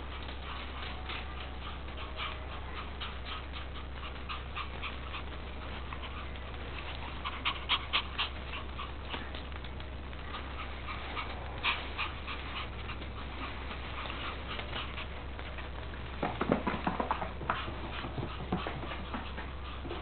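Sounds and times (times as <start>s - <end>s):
puppies whimpering: 0.0s - 9.5s
steady low hum: 0.0s - 20.0s.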